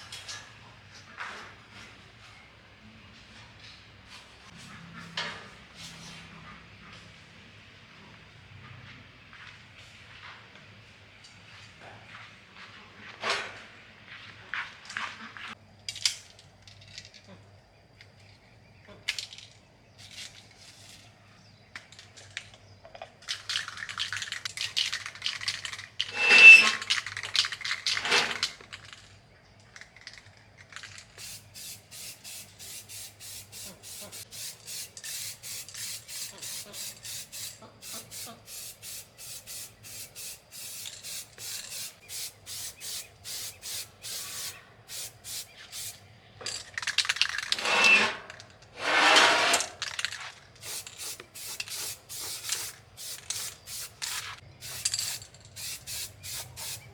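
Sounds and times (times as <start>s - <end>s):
hand scraping a workpiece: 26.1s - 26.9s, 47.5s - 49.8s.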